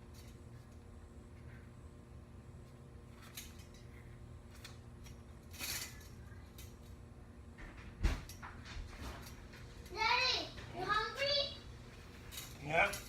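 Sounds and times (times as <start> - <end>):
metal parts clinking: 4.5 - 6.8, 12.3 - 13.0.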